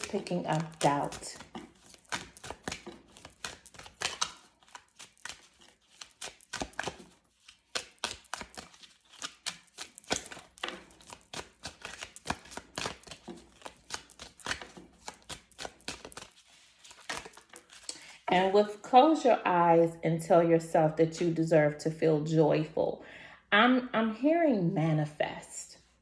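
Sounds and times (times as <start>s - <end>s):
cards being shuffled: 0.0s - 18.3s.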